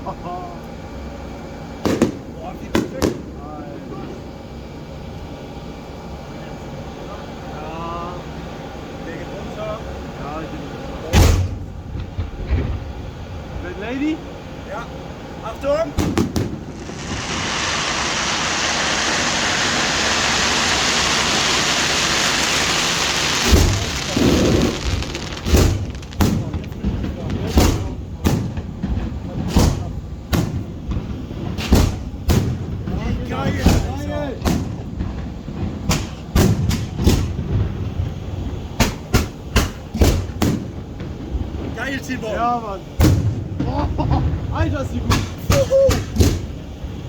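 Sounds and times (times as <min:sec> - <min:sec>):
fireworks crackling and hissing: 0:00.0 - 0:47.0
firework shells booming: 0:01.7 - 0:03.4, 0:11.1 - 0:13.6, 0:15.3 - 0:47.0
low rumble: 0:15.3 - 0:36.0.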